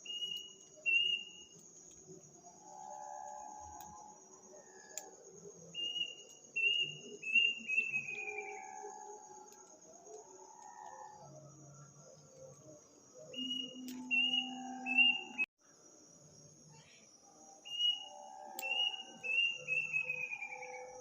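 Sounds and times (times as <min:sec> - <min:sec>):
insects chirring: 0:00.0 - 0:21.0
bird whistling notes: 0:13.3 - 0:15.4, 0:17.7 - 0:20.8.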